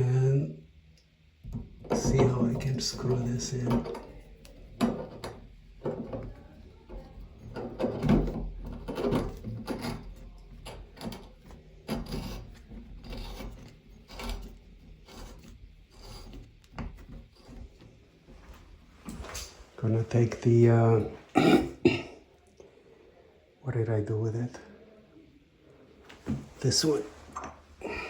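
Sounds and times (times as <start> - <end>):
faucet cartridge scraping and rubbing: 1.8 - 18.2.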